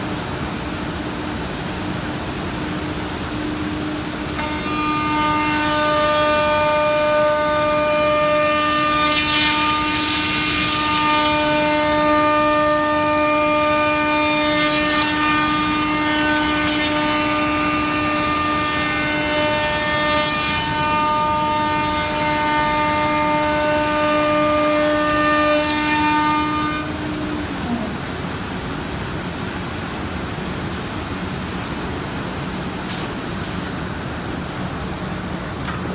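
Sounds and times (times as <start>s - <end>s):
router spindle whine: 2.3s - 29.5s
router cutting wood panel: 2.9s - 28.7s.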